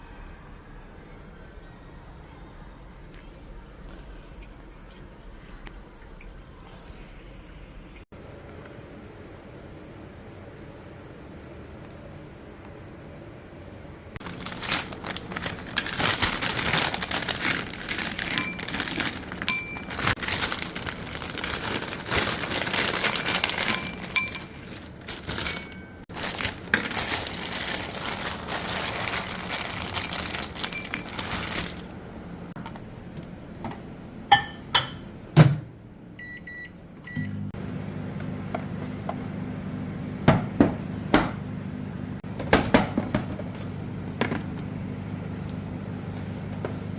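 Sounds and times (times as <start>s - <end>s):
microwave oven humming: 0.0s - 46.9s
clinks and knocks: 22.9s - 26.0s
microwave button beeps: 36.2s - 37.4s.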